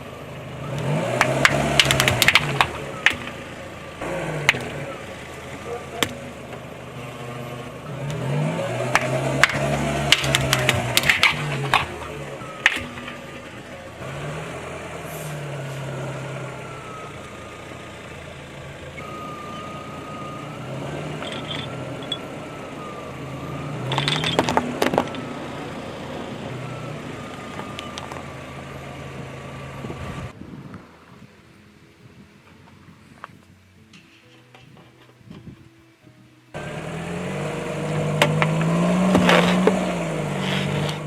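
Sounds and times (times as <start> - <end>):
car engine running: 0.0 - 30.4, 36.5 - 41.0
tyre crushing objects: 1.1 - 3.4, 8.1 - 13.4, 38.0 - 41.0.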